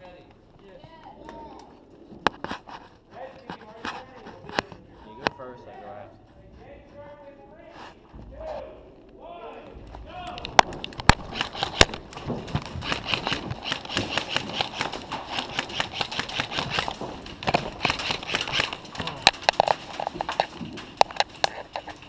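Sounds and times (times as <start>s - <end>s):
running footsteps pounding: 10.0s - 22.0s.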